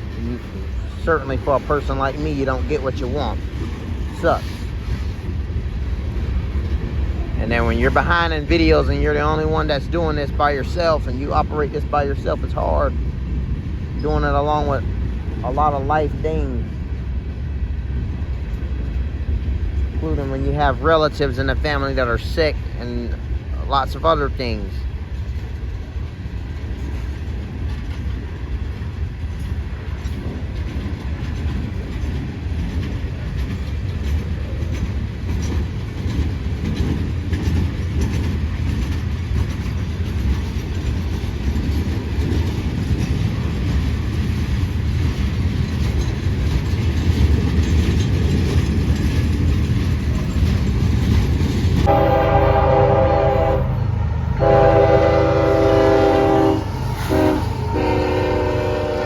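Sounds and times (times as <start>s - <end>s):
freight train rumbling on rails: 0.0s - 59.0s
locomotive horn: 51.9s - 59.0s.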